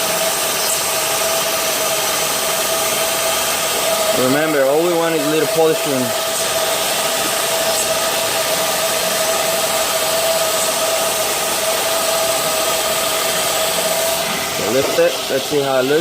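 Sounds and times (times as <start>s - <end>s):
motor whine: 0.0s - 16.0s.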